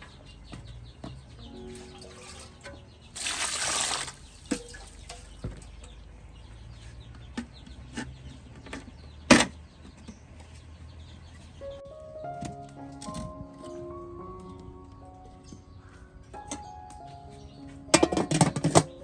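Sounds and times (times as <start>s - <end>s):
rush of liquid: 3.2s - 4.6s.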